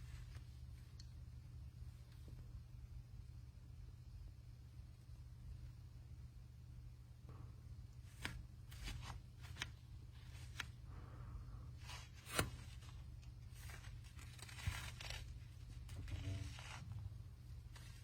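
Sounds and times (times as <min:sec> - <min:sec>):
low steady hum: 0:00.0 - 0:18.0
smartphone and packaging handling: 0:08.0 - 0:10.9, 0:11.8 - 0:18.0.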